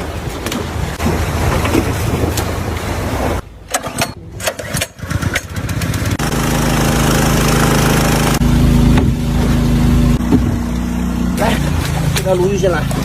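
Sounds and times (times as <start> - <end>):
small engine running: 5.0 - 12.2.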